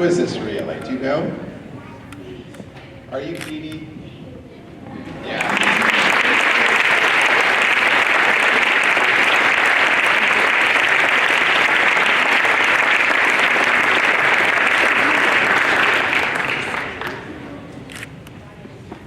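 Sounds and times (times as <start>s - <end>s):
audience applauding: 5.4s - 17.6s.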